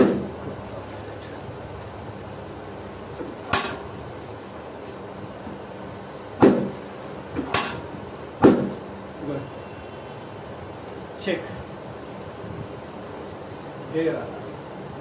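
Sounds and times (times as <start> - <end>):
sharp knocks on a back: 0.0 - 0.3, 6.4 - 6.8, 7.4 - 7.8, 8.4 - 8.8.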